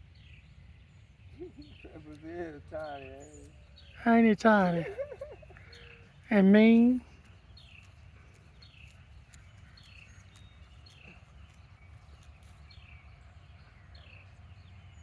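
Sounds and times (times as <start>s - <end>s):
bird chirping: 0.0s - 15.0s
faint clicks: 7.2s - 12.8s.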